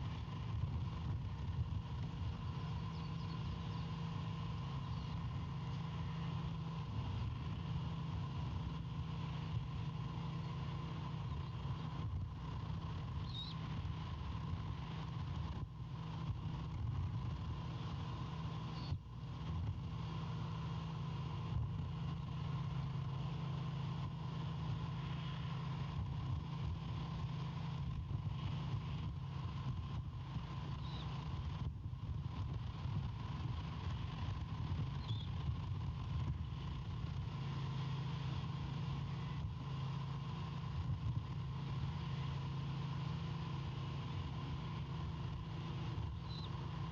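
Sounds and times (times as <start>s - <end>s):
faint high bird chirps: 2.3s - 5.4s, 10.3s - 11.9s, 13.1s - 13.8s, 18.6s - 19.0s, 30.7s - 31.2s, 34.9s - 35.4s, 46.1s - 46.7s.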